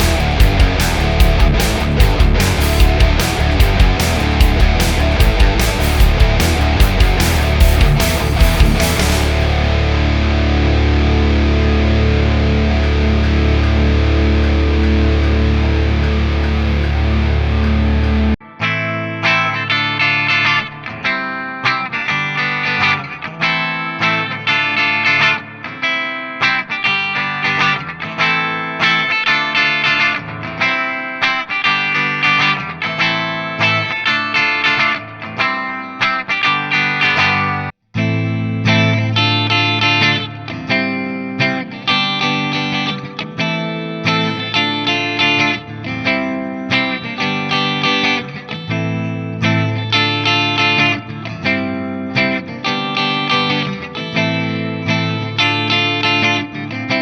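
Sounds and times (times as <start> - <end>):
distorted electric guitar: 0.0 - 57.0.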